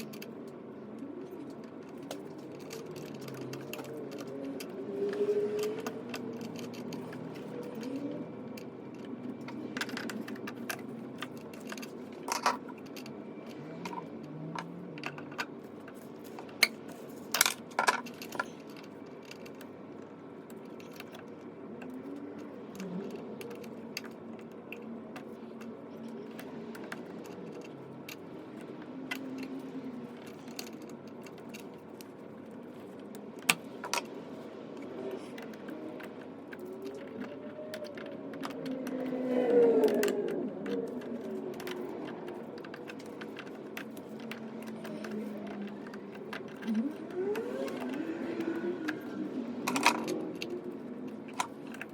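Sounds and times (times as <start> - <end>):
metallic clicks of tools: 1.3 - 15.6.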